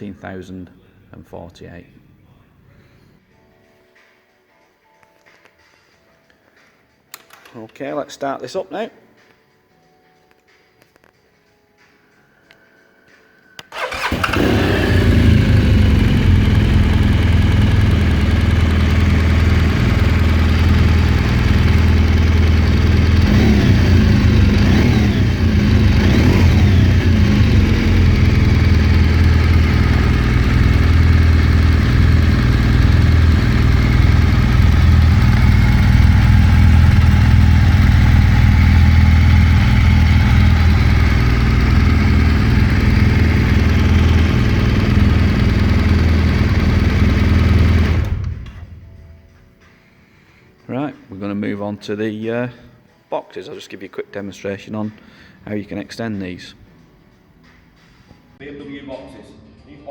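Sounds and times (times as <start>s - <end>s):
motorcycle engine starting and idling: 13.6s - 49.2s.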